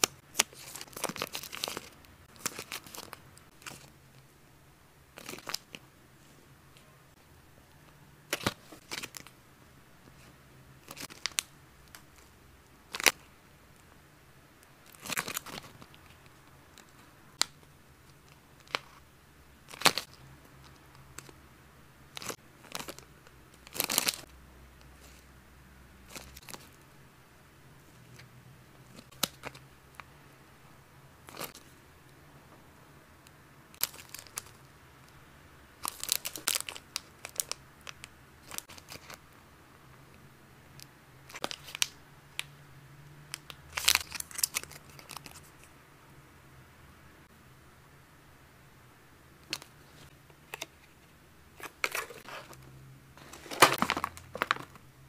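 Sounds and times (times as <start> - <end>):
plastic packaging crinkling: 0.4 - 3.9, 14.9 - 16.1, 35.8 - 39.2, 43.7 - 45.7, 51.6 - 52.6, 53.2 - 54.8
plastic packaging tearing: 43.7 - 45.4.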